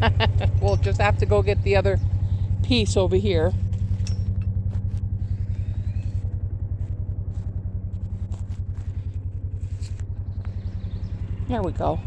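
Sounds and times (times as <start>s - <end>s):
engine idling: 0.0s - 12.0s
faint knocks and clanks: 3.5s - 10.8s.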